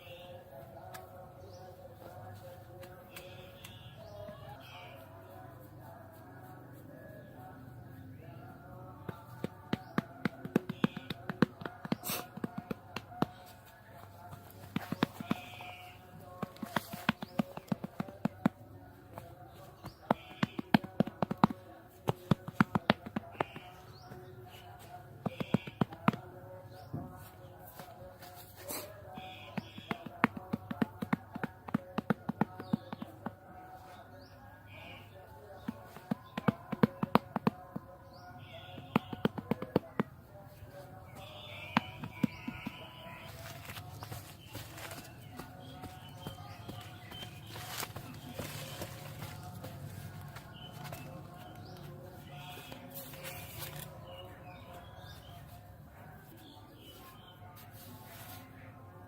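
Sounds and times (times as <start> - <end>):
sharp irregular taps: 9.1 - 13.5, 14.3 - 18.6, 19.8 - 24.0, 25.1 - 26.3, 29.2 - 33.5, 35.6 - 38.0, 38.6 - 40.2, 41.2 - 52.8.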